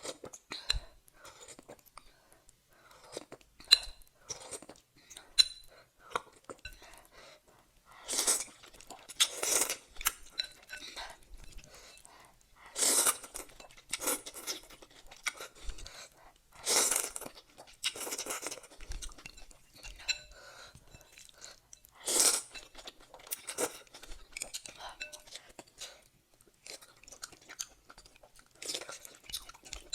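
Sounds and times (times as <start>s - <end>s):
chewing and crunching: 7.9s - 29.9s.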